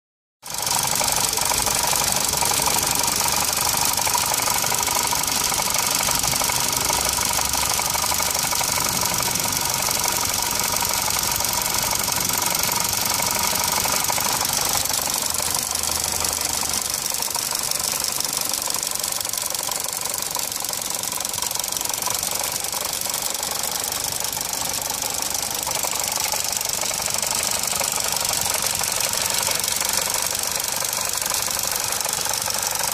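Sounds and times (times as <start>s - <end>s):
car engine running: 0.4s - 32.9s
engine rattle: 0.4s - 32.9s.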